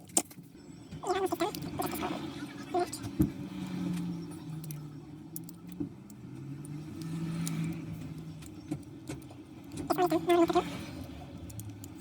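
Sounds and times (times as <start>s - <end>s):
low motor hum: 0.4s - 12.0s
light clicks and taps: 3.0s - 10.0s, 11.0s - 12.0s.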